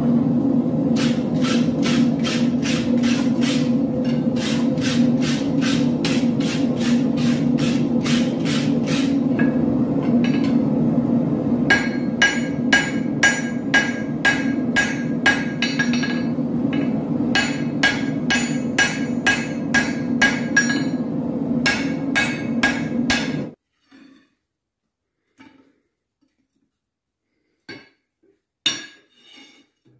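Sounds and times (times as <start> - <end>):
hammer striking steel on anvil: 11.7 - 23.6, 28.7 - 29.1.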